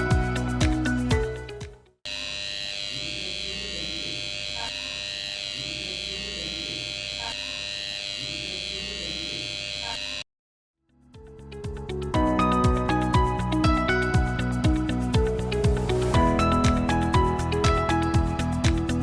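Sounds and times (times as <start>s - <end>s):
alarm buzzer high tone: 2.1s - 10.2s.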